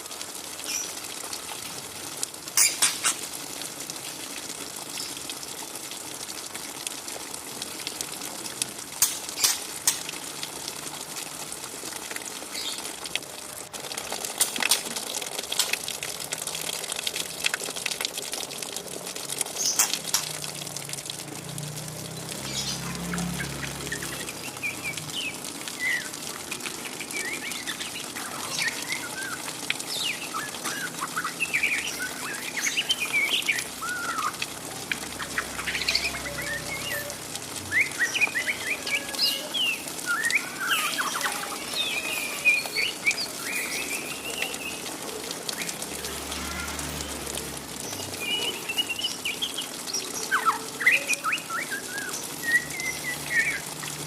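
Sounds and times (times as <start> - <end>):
bird twittering chirps: 26.9 - 34.4, 35.2 - 44.9.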